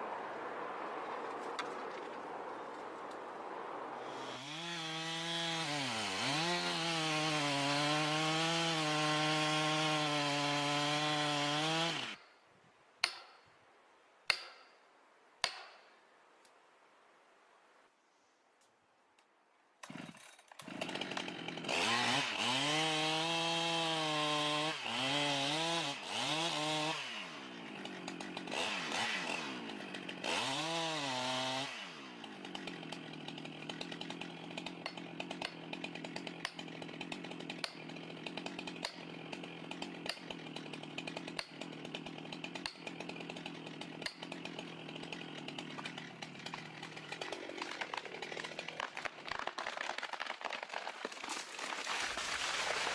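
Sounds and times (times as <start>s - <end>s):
two-stroke saw engine revving: 4.0s - 12.2s, 19.9s - 49.0s.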